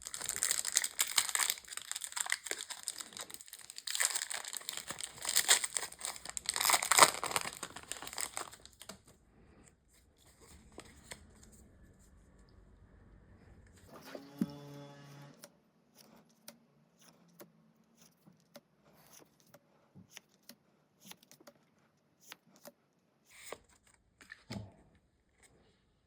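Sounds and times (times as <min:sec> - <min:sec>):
cards rustling: 0:00.0 - 0:09.1
low pitched tone: 0:11.0 - 0:15.4.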